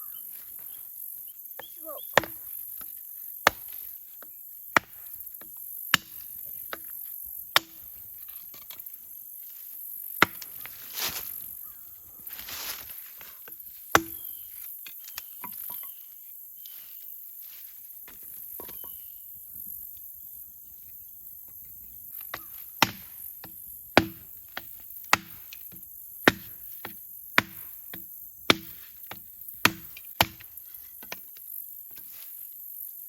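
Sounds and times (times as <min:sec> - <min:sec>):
wood chopping strikes: 0:01.6 - 0:08.0, 0:10.2 - 0:11.2, 0:13.4 - 0:14.4, 0:22.2 - 0:32.0.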